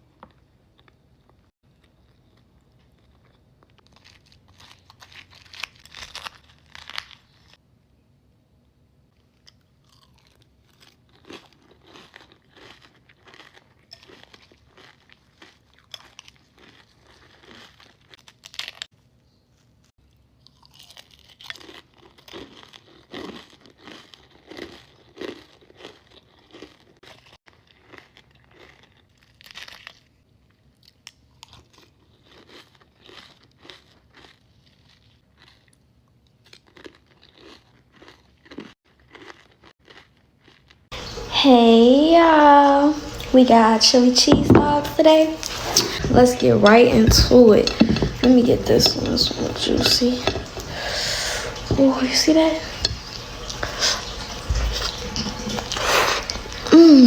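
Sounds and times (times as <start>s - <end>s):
crunchy chewing: 0.2s - 7.6s, 9.2s - 18.9s, 19.5s - 41.3s, 45.3s - 51.8s, 52.6s - 57.0s.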